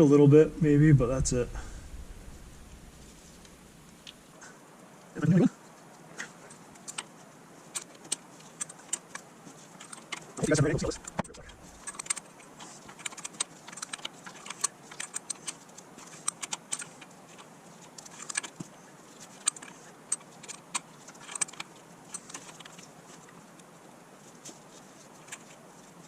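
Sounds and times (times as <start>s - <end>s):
metallic clicks of hand wrench: 11.0s - 12.3s, 12.9s - 18.6s, 19.4s - 22.8s.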